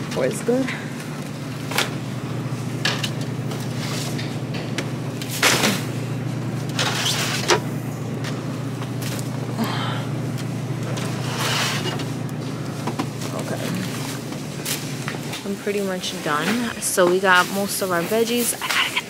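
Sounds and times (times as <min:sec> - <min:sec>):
steady low hum: 0:00.0 - 0:19.0
milk jugs clunking: 0:10.8 - 0:15.2.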